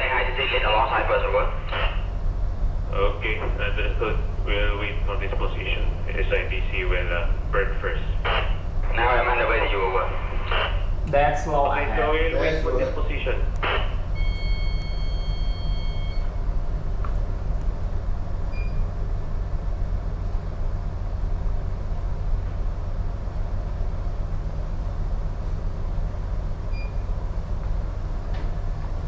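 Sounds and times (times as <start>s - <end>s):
ship engine drone: 0.0s - 29.0s
electronic tone: 13.6s - 16.4s.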